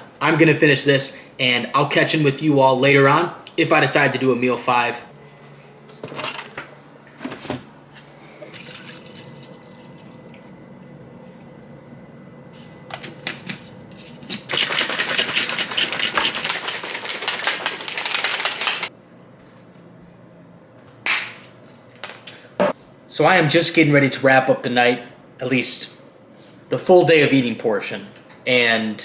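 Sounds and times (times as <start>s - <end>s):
low steady hum: 0.0s - 15.8s
liquid pouring: 8.4s - 10.5s.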